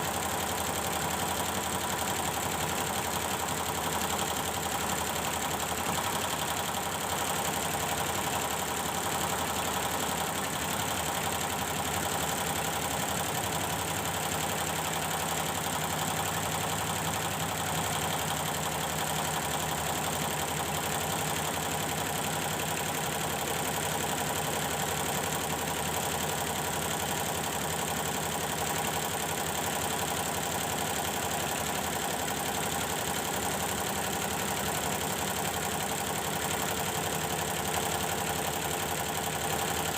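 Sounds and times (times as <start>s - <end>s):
embroidery machine stitching: 0.1s - 39.9s.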